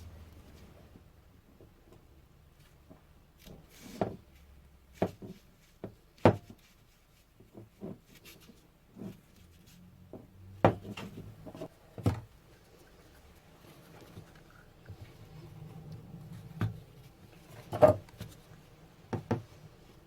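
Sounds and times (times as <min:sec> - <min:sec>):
hard objects knocking on work surface: 0:19.1 - 0:19.5.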